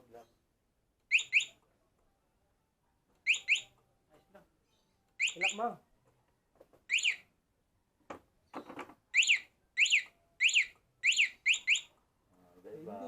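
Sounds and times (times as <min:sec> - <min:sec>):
alarm siren sweeping chirps: 0:01.1 - 0:01.6, 0:03.3 - 0:03.8, 0:05.2 - 0:05.7, 0:06.9 - 0:07.3, 0:09.2 - 0:12.0.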